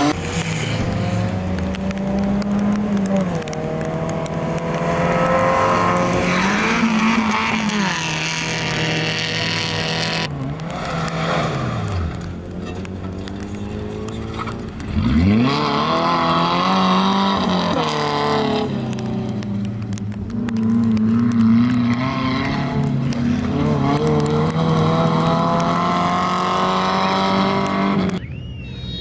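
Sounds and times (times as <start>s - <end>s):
off-road truck engine revving: 0.0s - 19.9s, 20.5s - 29.0s.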